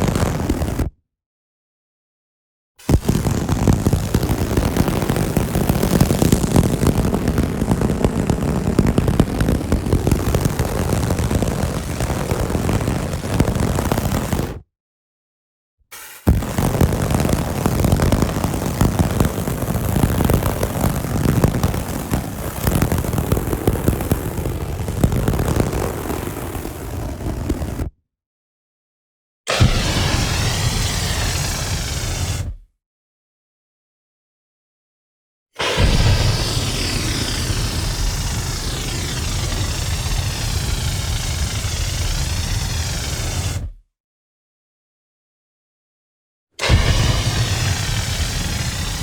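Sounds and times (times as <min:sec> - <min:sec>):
fire crackling and rumbling: 0:00.0 - 0:00.8, 0:02.9 - 0:14.6, 0:16.2 - 0:27.9, 0:29.5 - 0:32.5, 0:35.6 - 0:43.7, 0:46.6 - 0:49.0.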